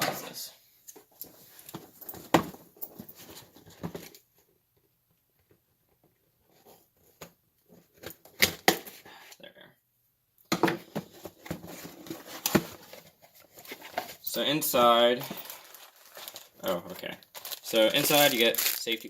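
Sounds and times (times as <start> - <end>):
packaging rustling: 11.6 - 19.0.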